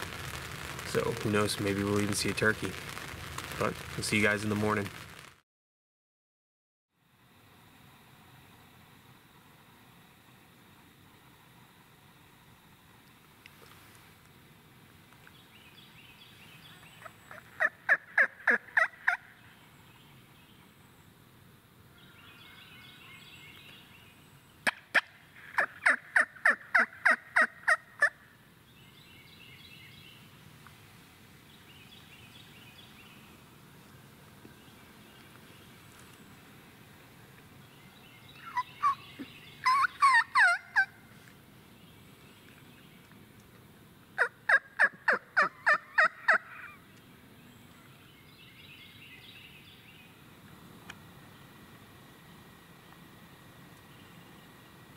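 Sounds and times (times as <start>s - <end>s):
wild turkey calling: 16.5s - 19.5s, 24.6s - 28.2s, 38.3s - 41.0s, 44.2s - 46.9s.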